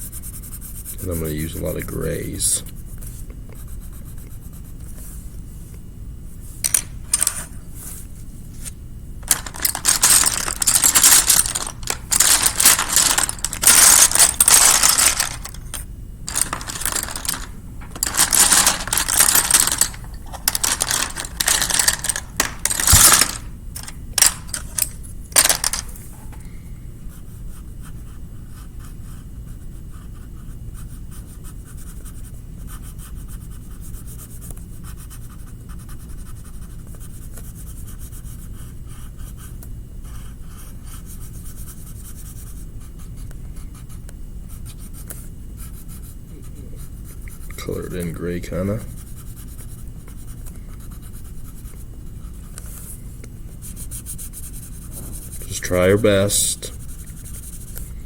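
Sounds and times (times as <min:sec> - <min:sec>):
scribbling on paper: 0:00.0 - 0:01.2.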